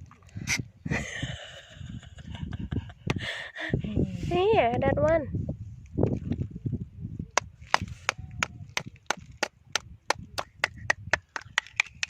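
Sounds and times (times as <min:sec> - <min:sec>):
tool knocking shells on rock: 0:07.8 - 0:12.0.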